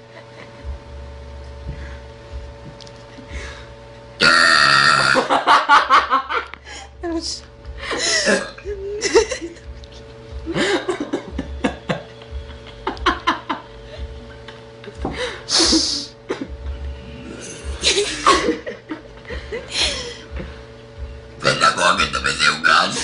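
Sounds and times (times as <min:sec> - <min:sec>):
people laughing: 0:05.2 - 0:06.5, 0:07.9 - 0:16.5, 0:17.6 - 0:20.5.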